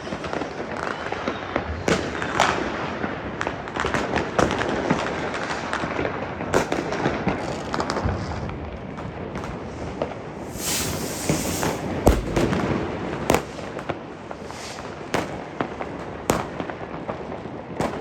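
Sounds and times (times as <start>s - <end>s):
fireworks bangs: 10.4s - 15.6s
fireworks crackling and popping: 10.4s - 18.0s.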